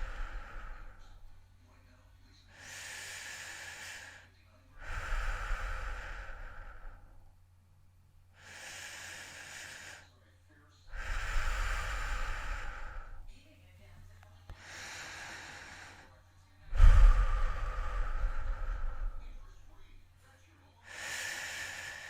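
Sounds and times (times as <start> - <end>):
person breathing heavily: 0.0 - 1.4, 2.5 - 7.2, 8.3 - 10.1, 10.9 - 13.3, 14.5 - 19.9, 20.8 - 22.0.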